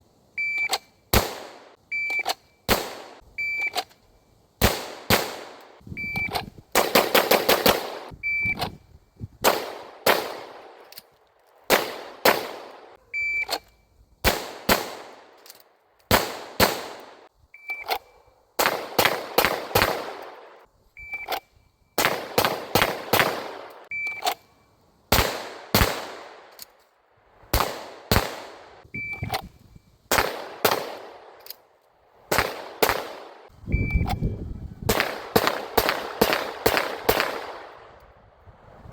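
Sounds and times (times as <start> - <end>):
pistol shots: 1.1 - 1.7, 2.7 - 3.2, 4.6 - 5.7, 6.7 - 8.1, 9.4 - 10.9, 11.7 - 13.0, 14.2 - 15.4, 16.1 - 17.3, 18.6 - 20.6, 22.0 - 23.8, 25.1 - 26.6, 27.5 - 28.7, 30.1 - 31.4, 32.3 - 33.5, 34.9 - 37.9
high shot timer beep: 6.0 - 6.4, 8.2 - 8.6, 29.0 - 29.3, 33.7 - 34.4.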